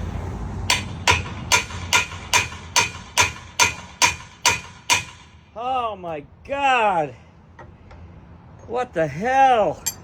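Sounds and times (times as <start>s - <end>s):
hammer striking metal pulley: 0.7s - 5.3s.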